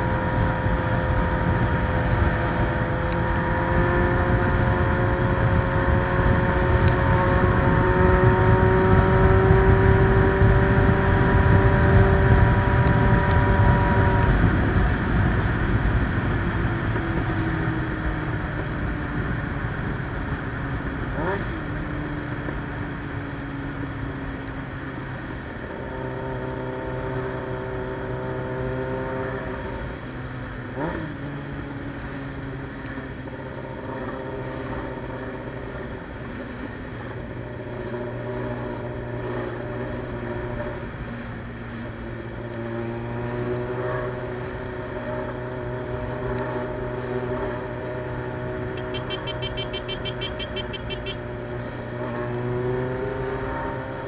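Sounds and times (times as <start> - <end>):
motorcycle engine running: 44.1 - 54.0.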